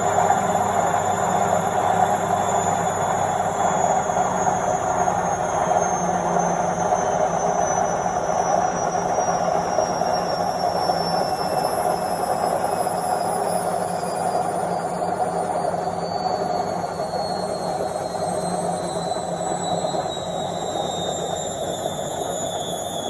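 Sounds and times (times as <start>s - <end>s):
faint high whine: 0.0s - 23.0s.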